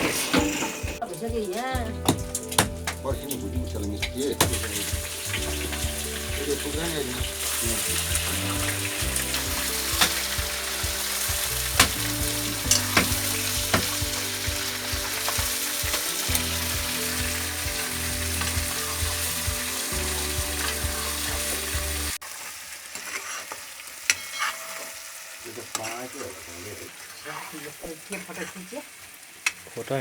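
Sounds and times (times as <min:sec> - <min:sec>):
curry sizzling in a pot: 0:00.0 - 0:30.0.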